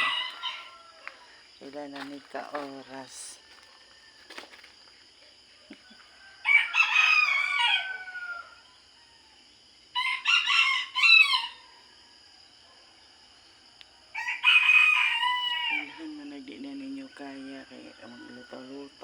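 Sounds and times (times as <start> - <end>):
rooster crowing: 0.0 - 1.4, 5.8 - 12.6, 14.0 - 16.0, 17.2 - 19.0.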